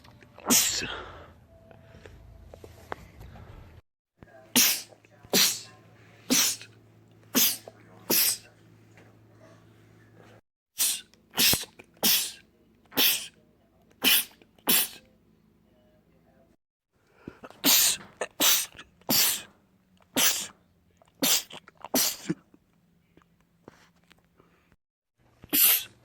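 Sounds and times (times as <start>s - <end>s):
man sneezing: 0.4s - 1.1s, 4.6s - 5.7s, 6.3s - 6.7s, 7.3s - 8.5s, 10.8s - 12.4s, 13.0s - 13.4s, 14.0s - 15.1s, 17.4s - 19.5s, 20.2s - 20.6s, 21.2s - 22.4s, 25.5s - 26.0s.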